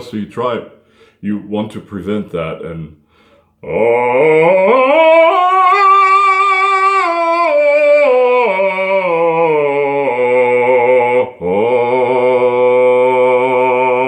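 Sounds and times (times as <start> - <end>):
man singing a scale: 3.6 - 14.0.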